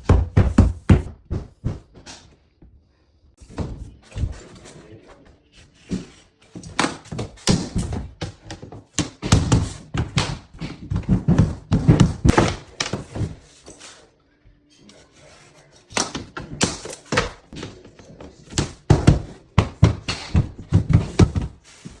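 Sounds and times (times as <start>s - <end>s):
mallet tapping floor planks: 6.6s - 13.3s, 16.0s - 22.0s.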